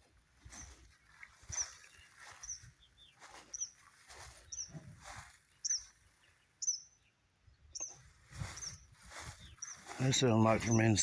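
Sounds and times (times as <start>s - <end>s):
soft rustling: 0.5s - 6.2s, 8.0s - 10.2s
bird chirping: 0.5s - 11.0s.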